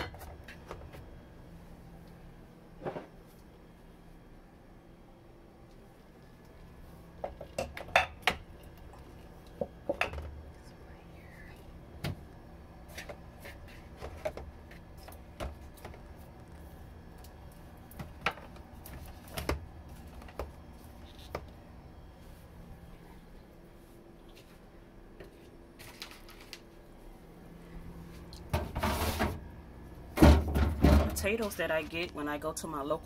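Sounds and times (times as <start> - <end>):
items knocking on refrigerator shelves: 28.5 - 29.5, 30.1 - 31.6.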